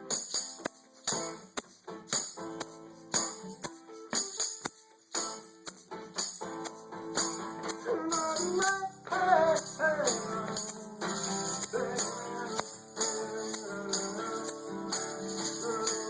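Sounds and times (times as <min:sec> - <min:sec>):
held guitar notes: 0:00.0 - 0:16.0
tambourine shaken on a beat: 0:00.0 - 0:16.0
person singing: 0:07.6 - 0:16.0.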